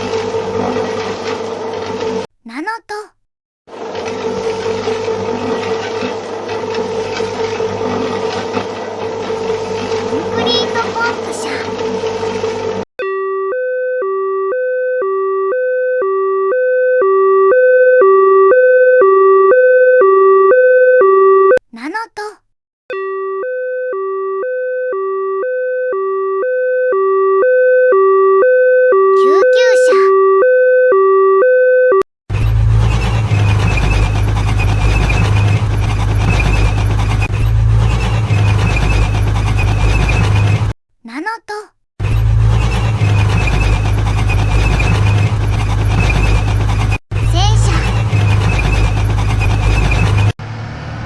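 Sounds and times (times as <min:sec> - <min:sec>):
tank tracks grinding clatter: 0:00.0 - 0:02.2, 0:03.7 - 0:12.8, 0:32.3 - 0:40.8, 0:42.0 - 0:50.4
two-tone ambulance siren: 0:13.0 - 0:21.6, 0:22.9 - 0:32.0
tank engine rumble: 0:32.3 - 0:40.7, 0:42.0 - 0:51.0.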